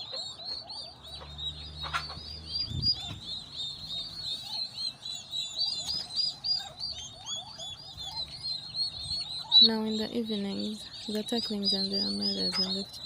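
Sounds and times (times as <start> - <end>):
turkey poults peeping: 0.0 - 13.0.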